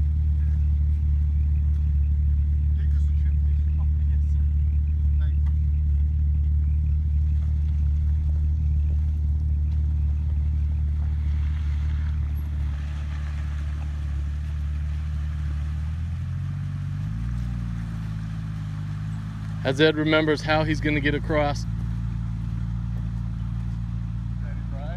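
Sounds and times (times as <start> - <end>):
engine idling: 0.0 - 24.9.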